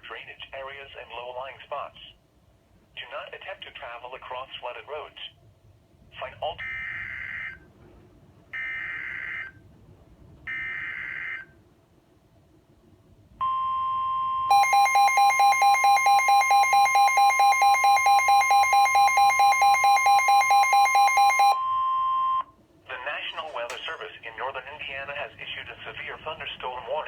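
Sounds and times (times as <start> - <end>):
rapid pulsing alarm beeps: 13.4 - 22.5
steady warning tone: 13.4 - 25.4.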